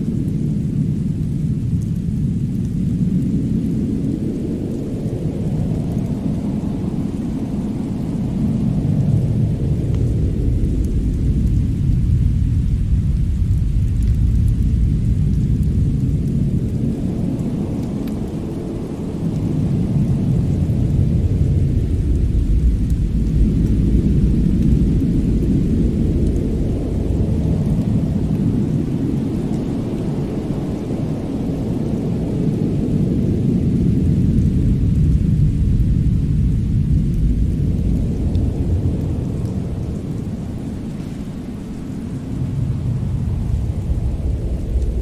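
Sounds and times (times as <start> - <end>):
deep steady rumble: 0.0 - 29.2.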